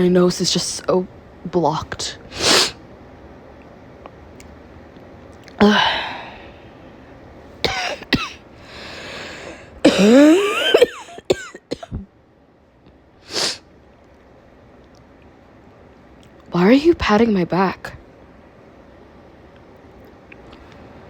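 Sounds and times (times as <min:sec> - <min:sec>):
woman coughing: 0:07.6 - 0:08.4, 0:09.8 - 0:12.1
woman drawing breath: 0:08.6 - 0:09.8.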